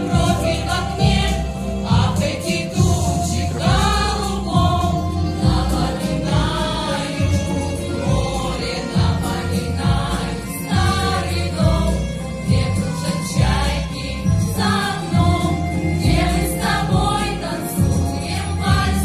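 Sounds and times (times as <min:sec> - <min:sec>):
pulsing bass beat: 0:00.0 - 0:19.0
vocal ensemble singing: 0:00.0 - 0:19.0.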